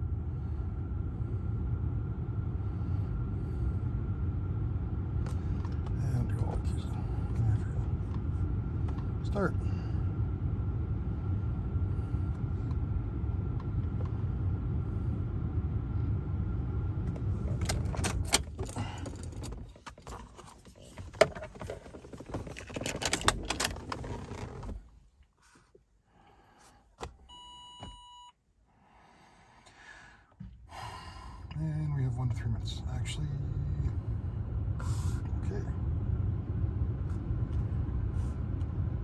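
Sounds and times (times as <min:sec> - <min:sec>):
low hum with high tone: 0:00.0 - 0:19.4, 0:27.3 - 0:39.0
short electronic beep: 0:27.3 - 0:28.3.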